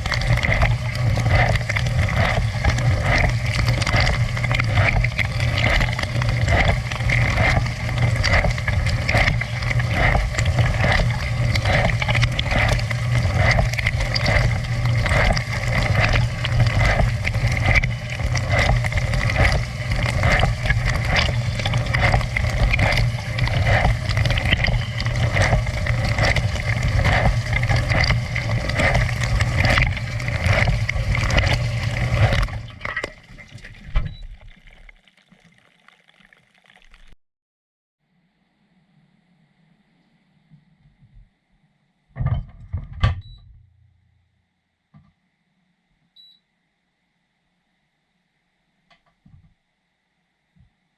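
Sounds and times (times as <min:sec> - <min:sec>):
dishwasher pump motor humming: 0:00.0 - 0:34.4
dishwasher gurgle: 0:00.0 - 0:37.2
water spraying and splashing: 0:00.0 - 0:37.2.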